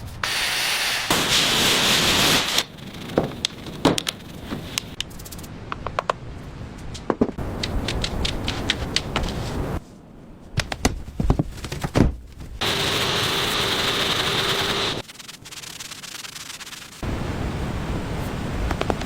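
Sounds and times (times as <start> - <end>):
hissing sanding: 0.2 - 3.5, 12.6 - 17.0.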